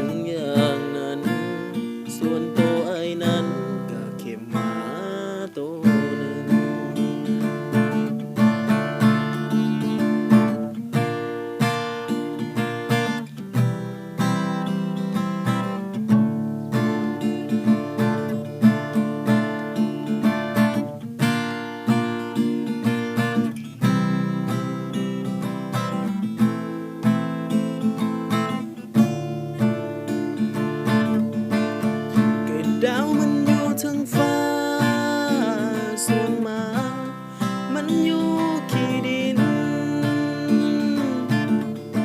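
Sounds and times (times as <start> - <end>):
guitar strummed: 0.0 - 42.0.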